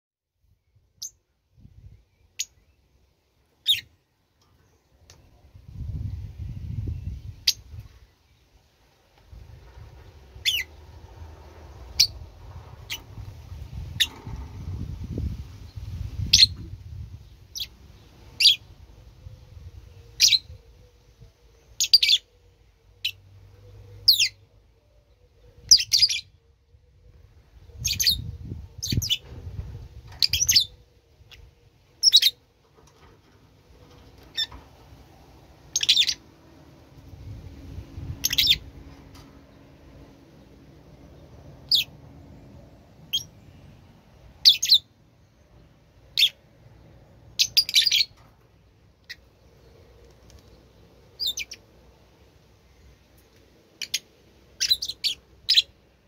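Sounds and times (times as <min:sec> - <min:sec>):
bird chirping: 0:00.6 - 0:08.6, 0:09.6 - 0:10.9, 0:12.8 - 0:26.6, 0:27.6 - 0:29.4, 0:30.1 - 0:32.4, 0:35.7 - 0:36.2, 0:38.0 - 0:39.7, 0:40.3 - 0:51.7, 0:52.8 - 0:55.8
low rumble: 0:09.0 - 0:21.1, 0:33.6 - 0:44.4.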